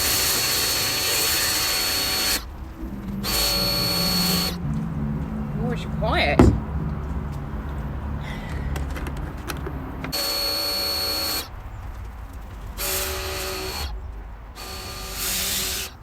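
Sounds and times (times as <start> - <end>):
pressure washer spraying: 0.0 - 4.6, 10.1 - 11.7, 12.7 - 16.0
low steady hum: 0.0 - 16.0.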